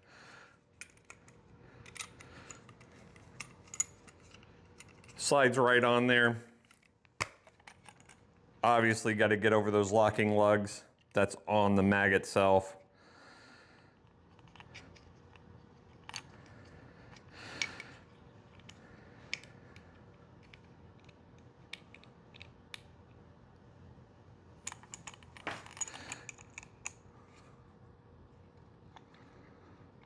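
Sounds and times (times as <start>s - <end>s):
magazine parts clicking and scraping: 0.7s - 5.2s, 6.6s - 8.4s, 14.0s - 23.1s, 24.6s - 27.6s.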